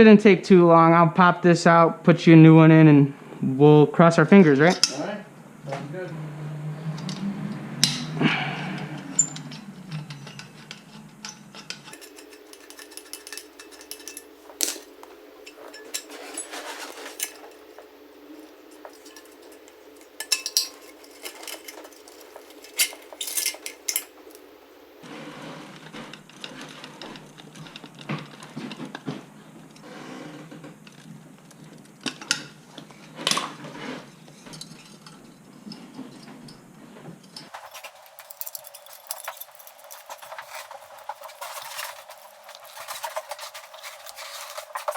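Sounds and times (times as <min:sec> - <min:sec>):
steady low hum: 0:07.8 - 0:25.1
metal tools clinking: 0:08.8 - 0:25.0, 0:37.4 - 0:44.9.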